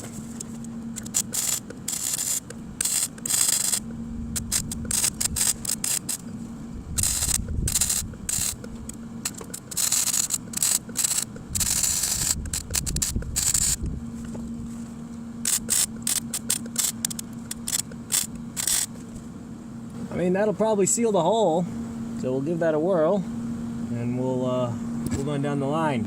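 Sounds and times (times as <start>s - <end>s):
welder arc crackling: 0.0s - 6.3s, 6.9s - 13.9s, 15.4s - 19.0s
low steady hum: 0.0s - 26.0s.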